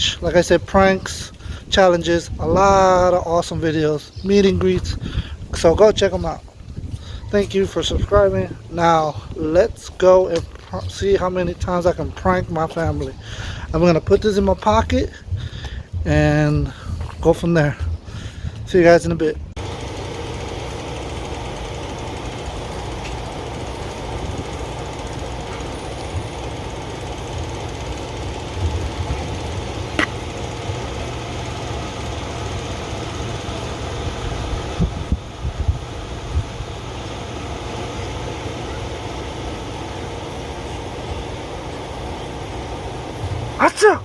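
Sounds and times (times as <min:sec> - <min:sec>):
low mechanical rumble: 0:00.0 - 0:44.0
sharp click: 0:30.0 - 0:30.2.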